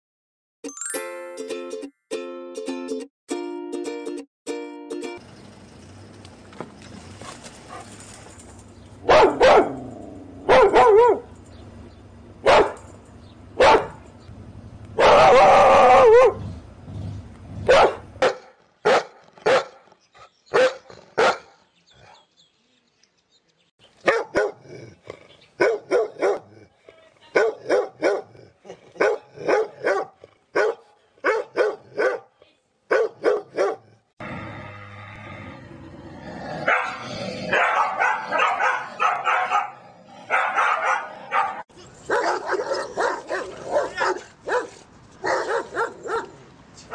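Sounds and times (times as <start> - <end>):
dog barking aggressively: 9.0 - 11.3, 12.4 - 12.9, 13.6 - 14.0, 15.0 - 16.5, 17.6 - 19.8, 20.5 - 21.5, 24.0 - 24.8, 25.6 - 26.5, 27.4 - 28.4, 29.0 - 32.3, 32.9 - 34.0, 36.6 - 46.4.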